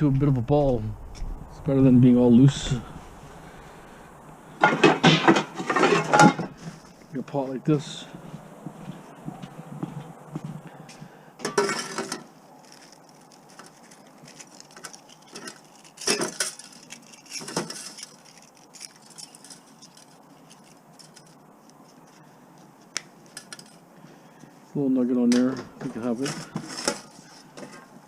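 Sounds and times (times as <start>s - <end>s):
wire rustling against metal pot: 4.5s - 7.1s, 11.4s - 24.6s, 25.8s - 28.0s.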